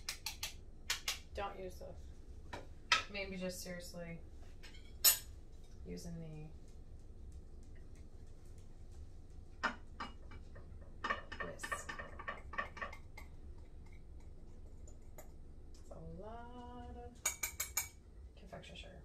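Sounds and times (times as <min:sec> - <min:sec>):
utensil tapping a bowl: 0:09.6 - 0:14.3.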